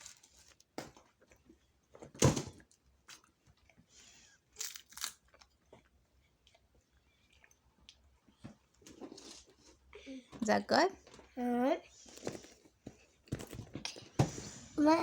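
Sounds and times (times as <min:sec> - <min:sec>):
dried seaweed crunching: 0:04.6 - 0:05.2.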